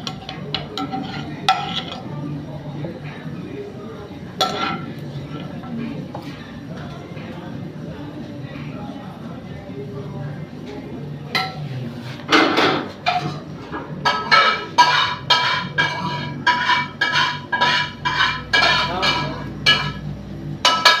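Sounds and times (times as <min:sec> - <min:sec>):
metal utensils clinking: 0:14.0 - 0:20.0.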